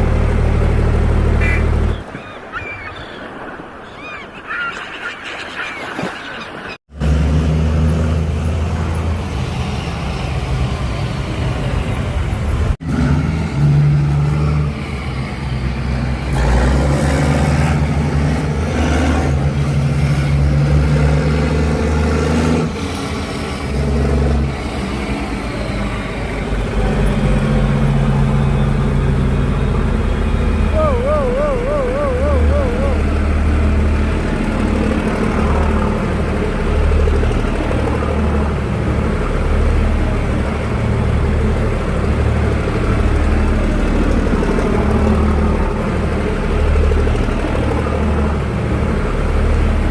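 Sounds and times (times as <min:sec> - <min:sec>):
diesel truck engine running: 0:22.7 - 0:49.9.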